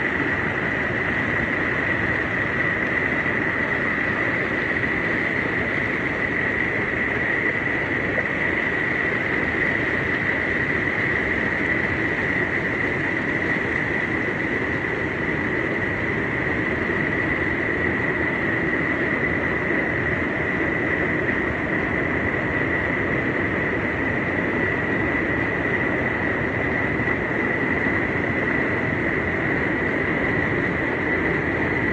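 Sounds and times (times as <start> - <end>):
steady high-pitched tone: 0.0 - 21.4.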